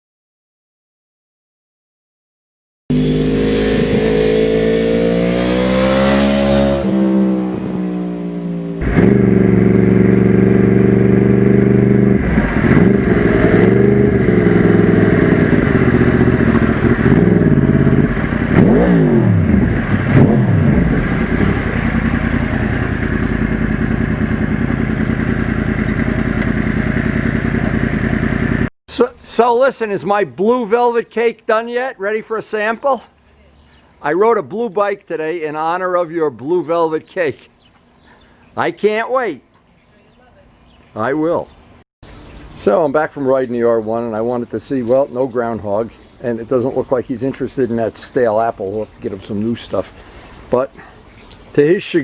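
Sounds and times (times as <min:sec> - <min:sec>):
motorcycle engine revving: 0:02.9 - 0:28.7.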